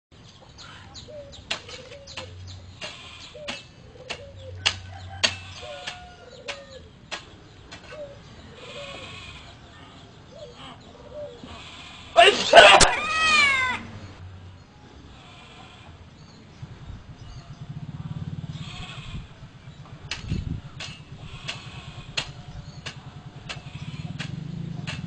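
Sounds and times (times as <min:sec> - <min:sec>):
sharp clicks: 0:20.1 - 0:25.0.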